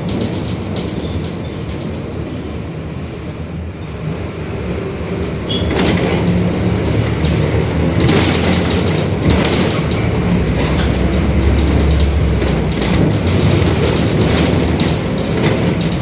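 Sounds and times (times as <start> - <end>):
diesel bus engine droning: 4.6 - 16.0
clattering rattles: 5.7 - 16.0.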